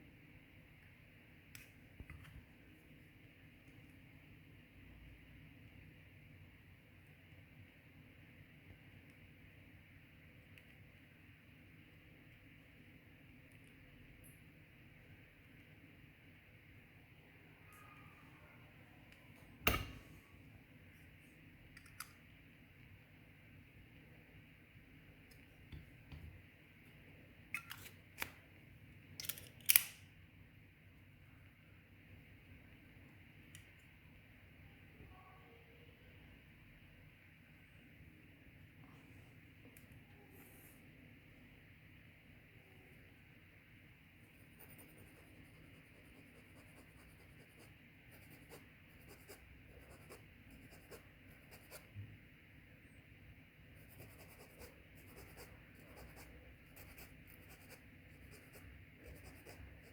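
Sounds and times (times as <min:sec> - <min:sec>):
small sharp clicks from hand tools: 0:29.2 - 0:30.0.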